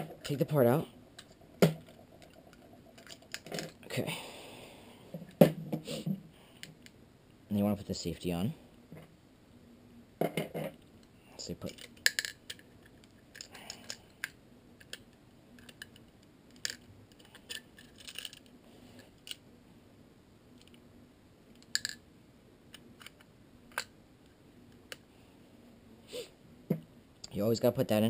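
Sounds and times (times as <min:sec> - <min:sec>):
pistol parts clicking: 0:01.2 - 0:03.8, 0:11.7 - 0:18.5
faint handling noise: 0:10.2 - 0:19.4.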